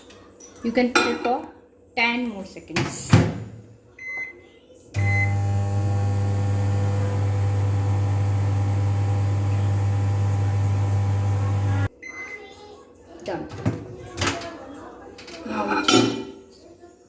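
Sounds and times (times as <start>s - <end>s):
microwave oven humming: 5.0s - 11.9s.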